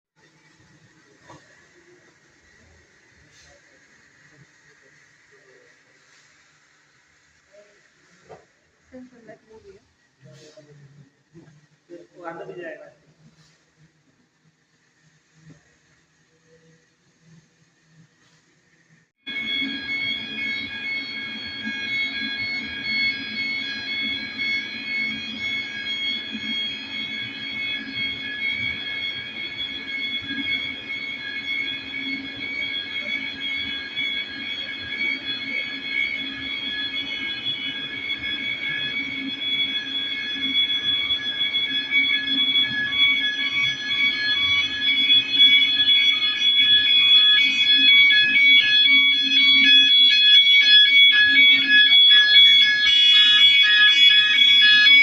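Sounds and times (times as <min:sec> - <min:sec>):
fire alarm high tone: 0:01.2 - 0:05.7, 0:19.2 - 0:55.0.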